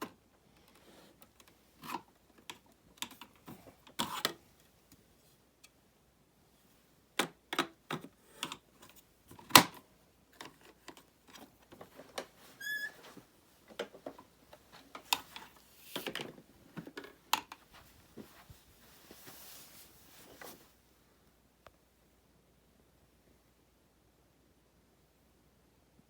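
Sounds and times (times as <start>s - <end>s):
short high squeak: 12.6s - 13.0s.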